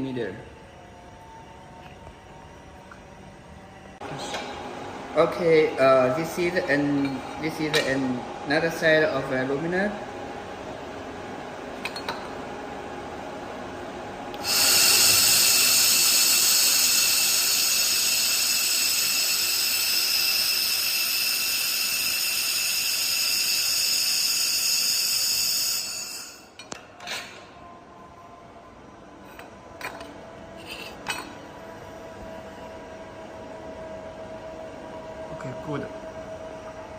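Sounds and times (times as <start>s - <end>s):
laser welder whine and hiss: 14.4s - 26.6s.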